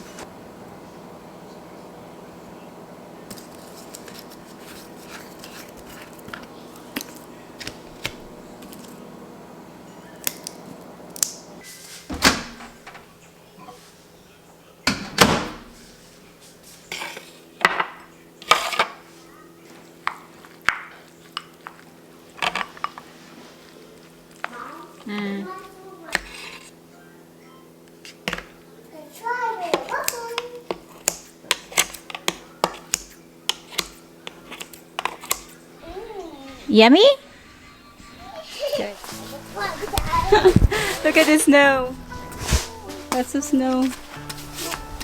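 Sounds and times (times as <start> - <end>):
steady low hum: 0.0 - 13.3, 35.9 - 45.0.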